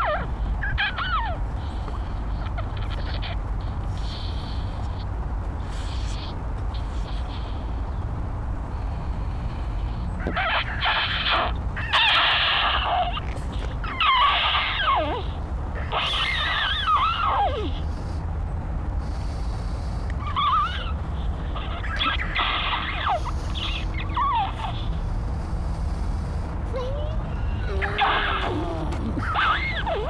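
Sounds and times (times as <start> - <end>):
short squeaky squeals: 0.0 - 1.7, 2.4 - 3.4, 10.1 - 18.0, 20.2 - 25.0, 26.8 - 30.0
steady low hum: 0.0 - 30.0.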